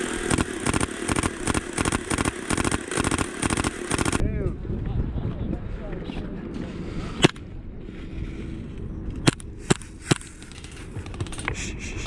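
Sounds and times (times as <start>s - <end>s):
airsoft gun shots: 0.0s - 4.2s, 7.2s - 7.4s
low rumbling handling noise: 0.0s - 12.0s.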